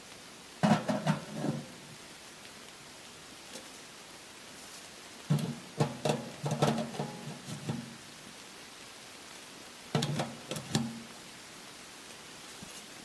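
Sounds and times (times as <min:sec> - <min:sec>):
sheet metal clanking: 0:00.6 - 0:01.7, 0:05.3 - 0:08.0.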